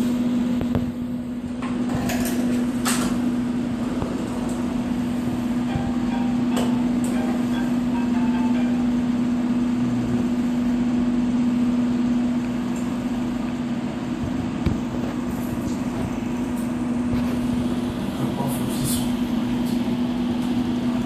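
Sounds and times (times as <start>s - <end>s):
floor grinding machine humming: 0.0s - 21.0s
steady tone: 3.3s - 18.4s.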